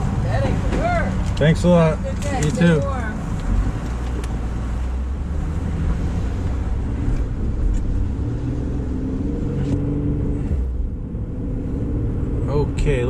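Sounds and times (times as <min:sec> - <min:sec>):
road rumble: 0:00.0 - 0:13.0
vehicle engine accelerating: 0:00.0 - 0:13.0.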